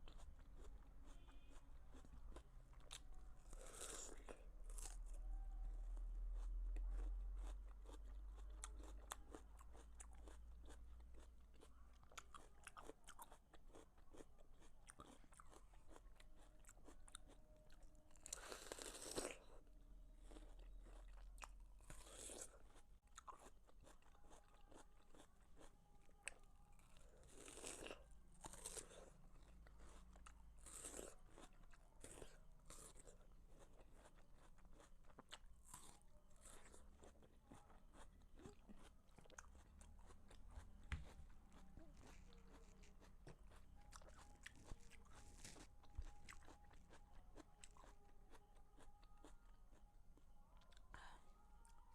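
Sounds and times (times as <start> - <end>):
watermelon chewing: 0.1 - 5.1, 6.4 - 19.6, 20.2 - 49.8
watermelon bites: 38.4 - 48.0.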